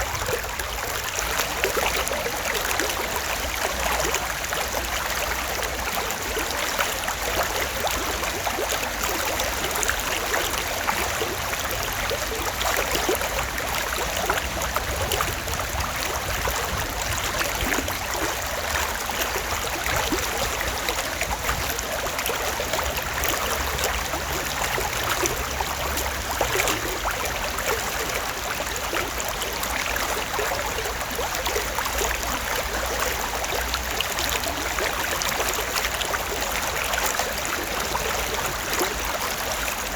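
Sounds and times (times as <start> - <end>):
stream water over stones: 0.0 - 39.9.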